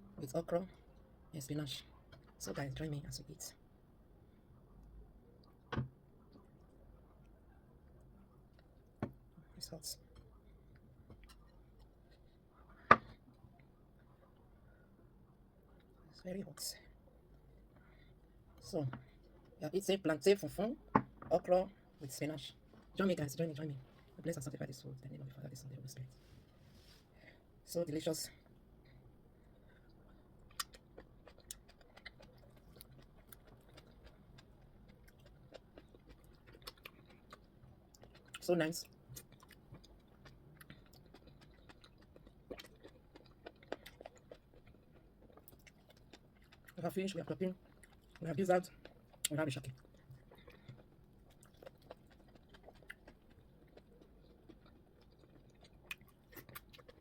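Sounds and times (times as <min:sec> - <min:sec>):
wet chewing: 0:28.9 - 0:57.0.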